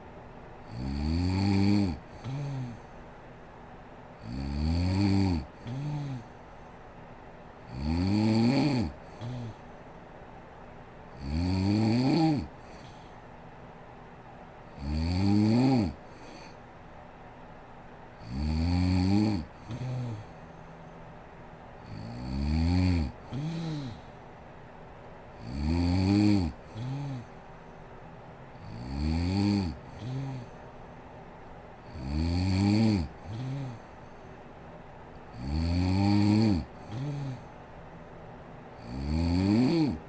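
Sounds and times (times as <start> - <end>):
woman snoring loudly: 0.7 - 2.8, 4.2 - 6.3, 7.7 - 9.6, 11.2 - 12.9, 14.8 - 16.4, 18.2 - 20.3, 21.9 - 24.1, 25.4 - 27.3, 28.6 - 30.5, 31.9 - 33.9, 35.3 - 37.5, 38.8 - 40.0
short snort: 21.9 - 24.1, 25.5 - 27.3, 31.9 - 34.0, 35.4 - 37.5, 38.8 - 40.0.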